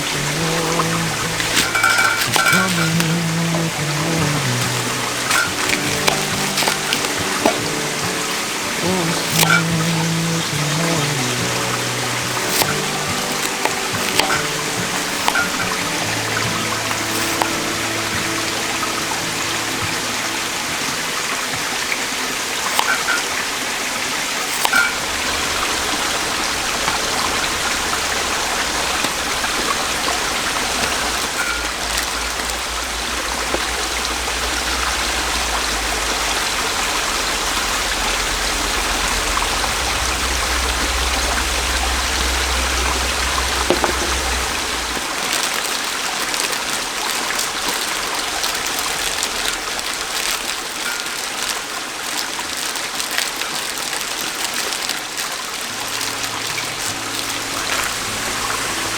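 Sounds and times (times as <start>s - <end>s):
stream rushing: 0.0s - 58.9s
low rumble: 31.1s - 45.2s.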